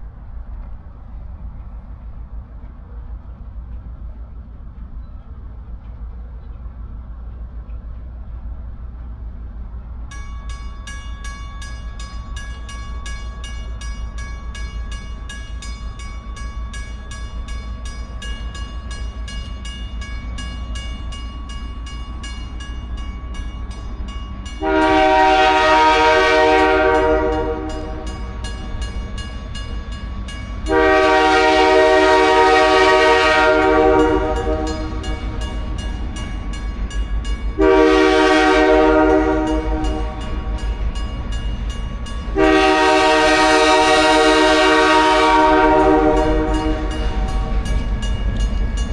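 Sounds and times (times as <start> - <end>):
locomotive air horn blasts: 24.6 - 28.3, 30.7 - 35.2, 37.6 - 40.6, 42.4 - 47.5.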